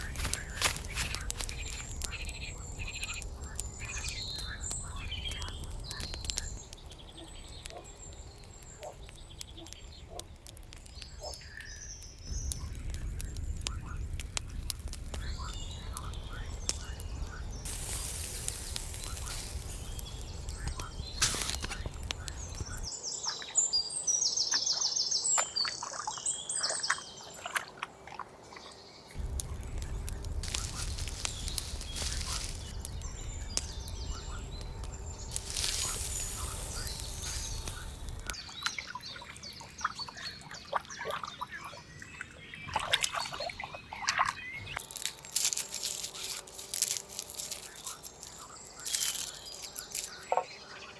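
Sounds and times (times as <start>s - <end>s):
birds chirping: 0.0s - 50.9s
low rumble: 29.2s - 38.4s.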